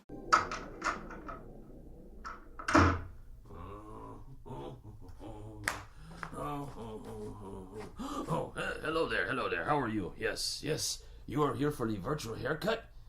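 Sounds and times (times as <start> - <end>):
knocks and clicks: 0.0 - 3.2.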